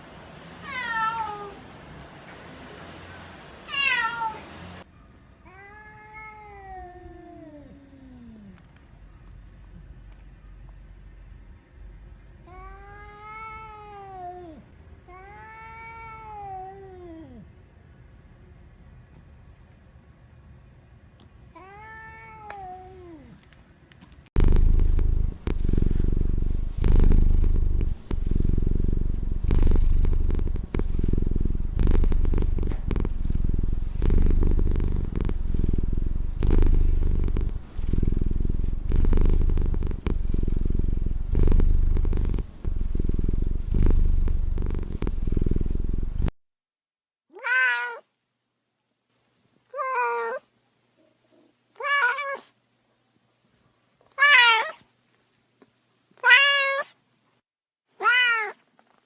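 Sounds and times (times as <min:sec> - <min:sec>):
cat meowing: 0:00.6 - 0:01.6, 0:03.7 - 0:04.4, 0:05.4 - 0:07.8, 0:12.5 - 0:17.4, 0:21.6 - 0:23.3, 0:47.3 - 0:48.1, 0:49.7 - 0:50.5, 0:51.8 - 0:52.5, 0:54.2 - 0:54.8, 0:56.2 - 0:57.0, 0:58.0 - 0:58.6
cat purring loudly: 0:24.4 - 0:46.4.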